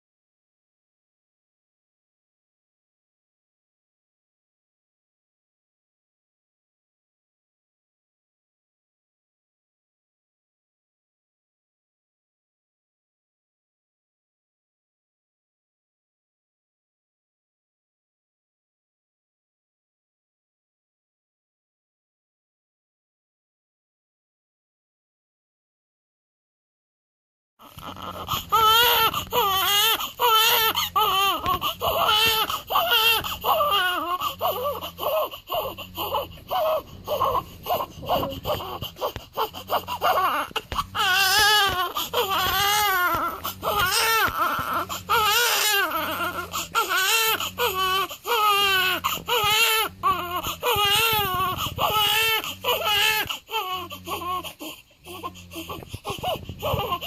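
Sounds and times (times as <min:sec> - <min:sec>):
newborn baby crying: 0:27.6 - 0:57.0.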